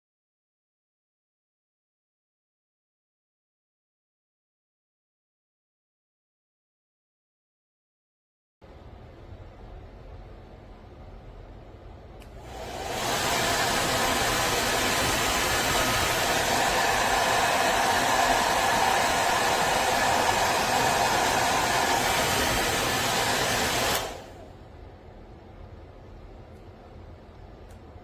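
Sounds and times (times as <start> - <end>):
hair dryer blowing: 12.2 - 24.5.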